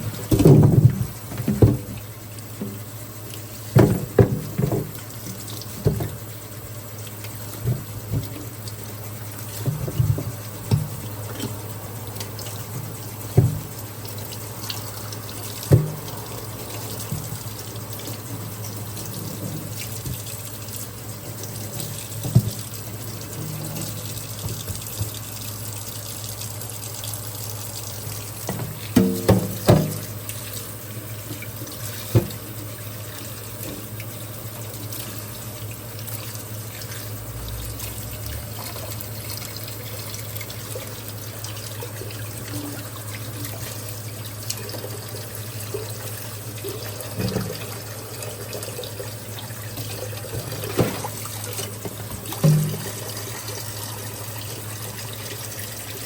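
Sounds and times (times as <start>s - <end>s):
knocks and clatters in sink: 0.0s - 2.9s, 3.7s - 6.3s, 7.4s - 8.8s, 9.4s - 14.4s, 15.4s - 20.5s, 21.1s - 25.4s, 28.4s - 30.4s, 31.1s - 32.6s, 47.1s - 47.9s, 49.8s - 53.5s
tap running into sink: 0.0s - 26.6s, 27.7s - 34.1s, 34.8s - 56.0s.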